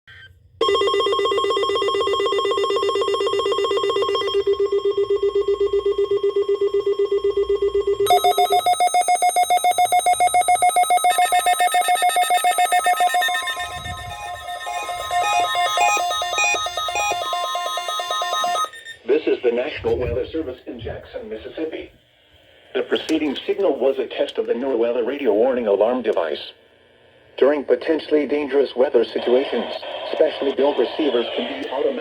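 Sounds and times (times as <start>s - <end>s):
fast-pulsing electronic beep: 8.1s - 19.0s.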